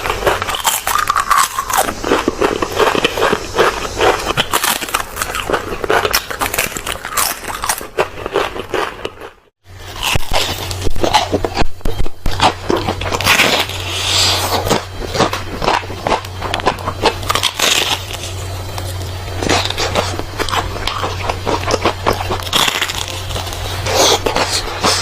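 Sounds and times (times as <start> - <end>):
crunching of crispy food: 0.0 - 25.0
steady low hum: 0.0 - 25.0.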